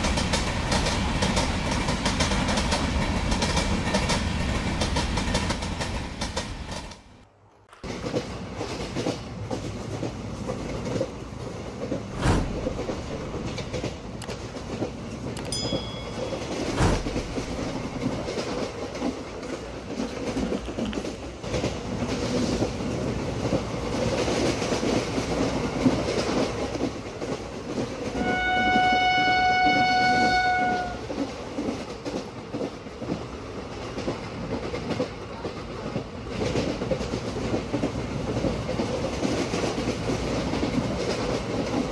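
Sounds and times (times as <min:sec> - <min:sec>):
train wheels clickety-clack: 0:00.0 - 0:41.9
sharp knocks: 0:16.7 - 0:17.7
train horn blast: 0:28.2 - 0:31.0.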